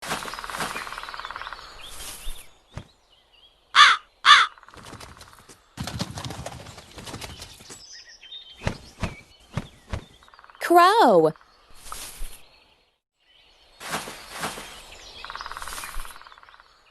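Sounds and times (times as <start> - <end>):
crow cawing: 3.8 - 4.6.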